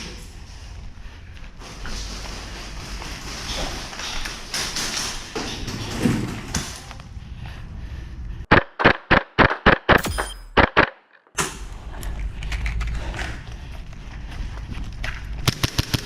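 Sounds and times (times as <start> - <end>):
airsoft gun shots: 15.5 - 16.0.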